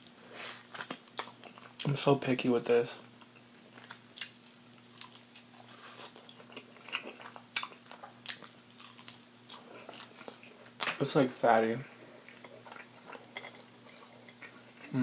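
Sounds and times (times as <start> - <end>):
chewing and lip smacking: 3.2 - 10.8, 12.2 - 14.9.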